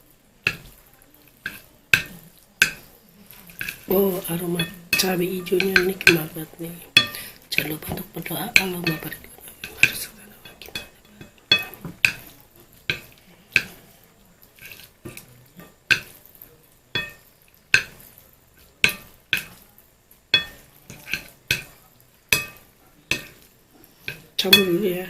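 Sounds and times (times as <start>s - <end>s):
cutlery clinking against a dish: 0.4s - 25.0s.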